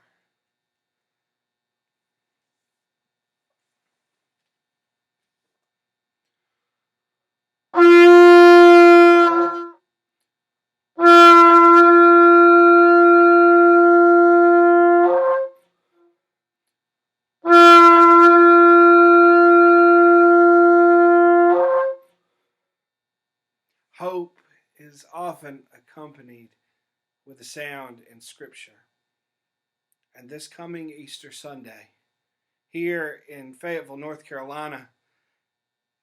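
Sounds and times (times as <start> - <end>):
animal horn blasts: 7.8 - 9.7, 11.0 - 15.5, 17.4 - 22.0.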